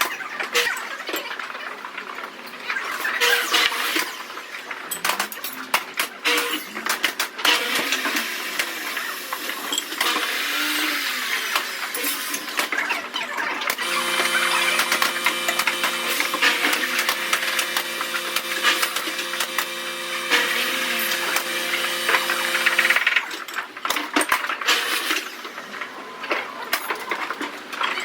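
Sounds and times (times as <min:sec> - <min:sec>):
power tool whining: 0:13.8 - 0:23.2.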